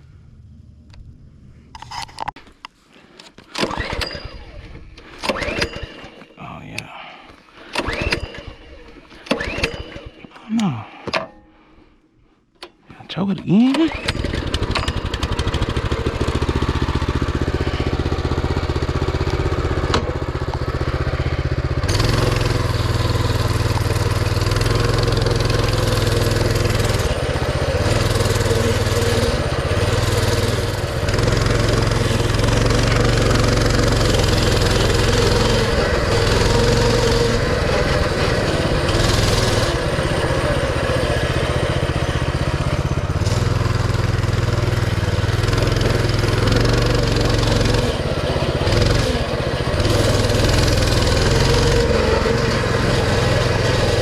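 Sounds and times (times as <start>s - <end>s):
mini bike engine running: 13.5s - 54.0s.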